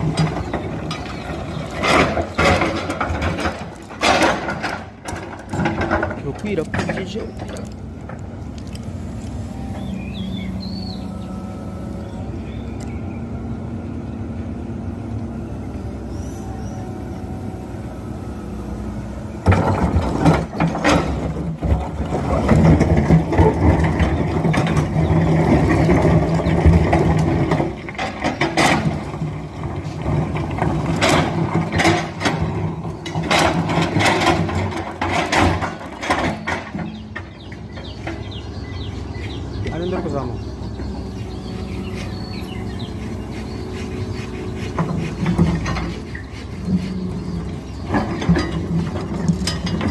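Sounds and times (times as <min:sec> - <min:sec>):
machine clanks and knocks: 0:00.0 - 0:08.2, 0:19.4 - 0:38.9, 0:43.8 - 0:49.9
excavator engine running: 0:00.0 - 0:49.9.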